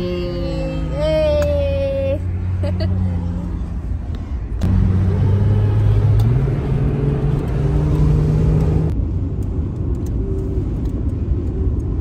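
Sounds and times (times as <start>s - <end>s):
road noise: 0.0s - 12.0s
car engine accelerating: 0.4s - 9.0s.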